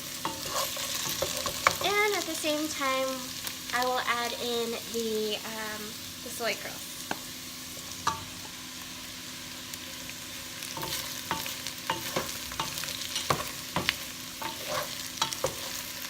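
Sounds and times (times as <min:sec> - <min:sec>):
potatoes sizzling in hot oil: 0:00.0 - 0:16.0
utensil scraping a pot: 0:00.1 - 0:01.9, 0:10.8 - 0:16.0.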